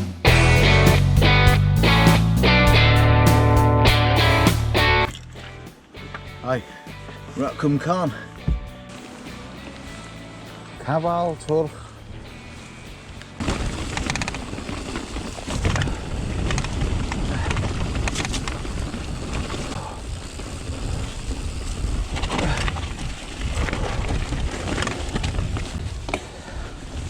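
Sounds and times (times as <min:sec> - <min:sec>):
bike rumble and rattle: 0:00.0 - 0:27.0
wind buffeting microphone: 0:13.4 - 0:27.0.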